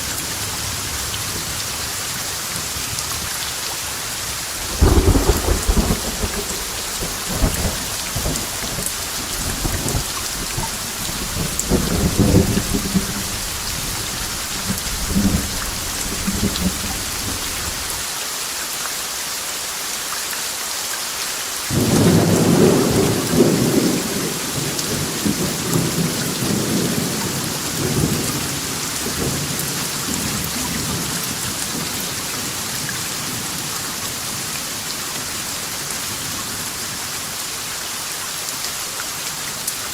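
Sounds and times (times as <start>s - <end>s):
steady rain: 0.0s - 39.9s
thunder rumbling: 4.3s - 18.0s, 21.7s - 29.5s
thunderclap: 4.6s - 17.9s.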